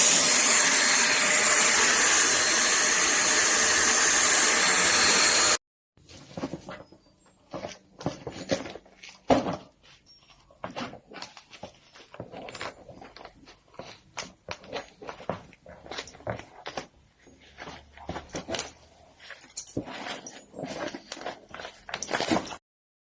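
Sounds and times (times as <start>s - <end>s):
objects being handled: 6.0s - 22.6s.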